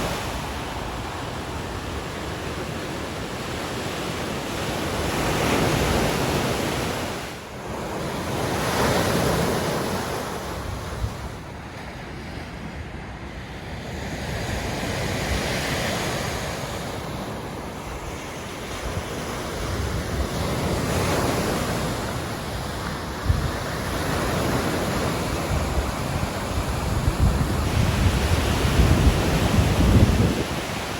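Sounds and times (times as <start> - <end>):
waves breaking on a beach: 0.0 - 30.9
wind buffeting microphone: 22.5 - 30.9.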